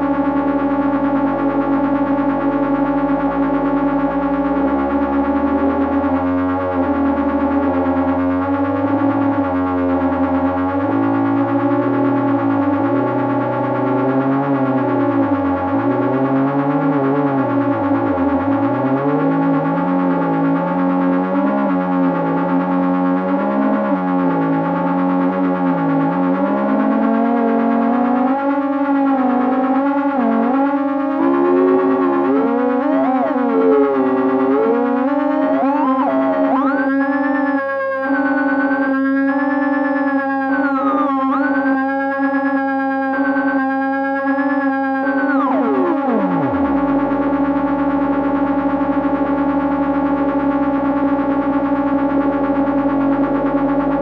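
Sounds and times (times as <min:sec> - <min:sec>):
electronic buzzing drone: 0:00.0 - 0:54.0
fast-pulsing high tone: 0:00.0 - 0:54.0.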